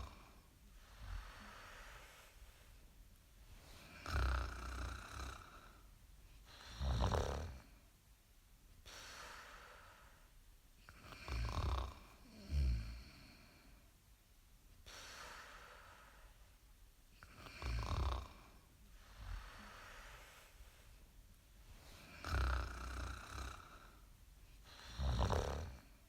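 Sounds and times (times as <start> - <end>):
loud snoring: 0.0 - 0.3, 3.8 - 5.8, 6.5 - 7.7, 11.0 - 13.3, 17.3 - 18.5, 22.0 - 24.0, 24.7 - 26.0
soft breathing: 0.0 - 6.9, 8.8 - 14.0, 14.8 - 26.0.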